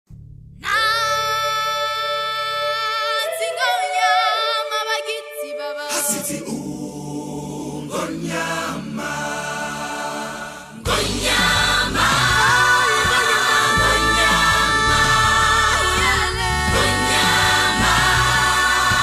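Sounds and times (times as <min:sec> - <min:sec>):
choir singing: 0:05.4 - 0:19.0.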